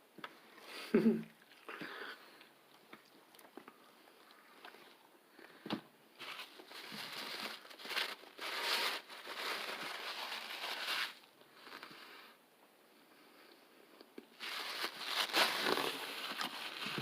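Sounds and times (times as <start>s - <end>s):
paper wrapper crinkling: 6.2s - 11.9s, 14.3s - 17.0s.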